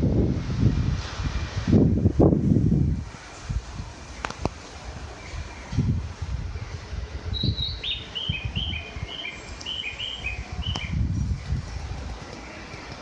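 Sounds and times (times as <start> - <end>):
bird-like chirps: 7.4 - 11.6
low uneven rumble: 10.4 - 13.0.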